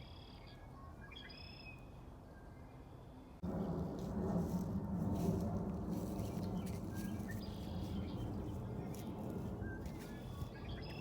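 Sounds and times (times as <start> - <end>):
low background rumble: 3.3 - 11.0
songbirds chirping: 5.9 - 11.0.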